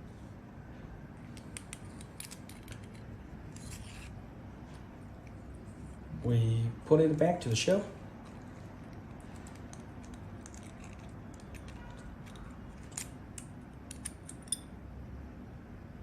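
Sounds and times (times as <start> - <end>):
small parts clicking and tapping: 1.3 - 4.1, 8.2 - 14.7.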